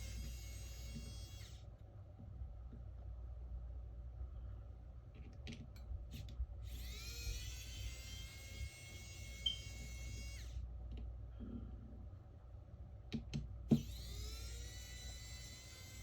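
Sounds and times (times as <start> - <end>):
electric screwdriver whining: 0.0 - 1.6, 6.7 - 10.6, 13.7 - 16.0.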